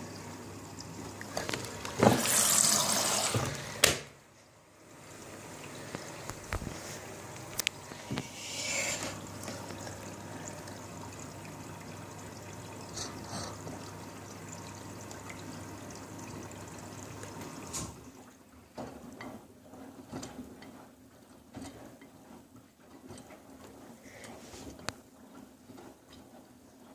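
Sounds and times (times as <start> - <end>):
water running through washing machine: 0.0 - 26.9
faint clicks and ticks: 20.2 - 26.9.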